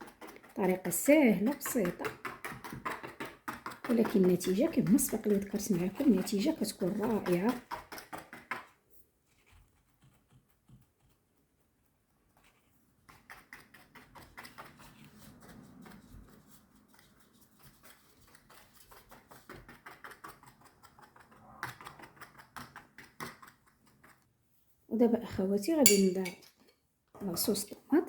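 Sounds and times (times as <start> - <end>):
fork tapping through dough on tray: 0.0 - 8.7, 25.8 - 26.4.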